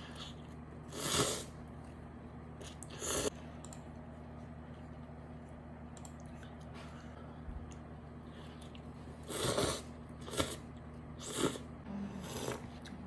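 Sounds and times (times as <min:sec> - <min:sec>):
slurping and chewing noodles: 0:00.0 - 0:01.6, 0:08.3 - 0:13.0
low steady hum: 0:00.0 - 0:13.0.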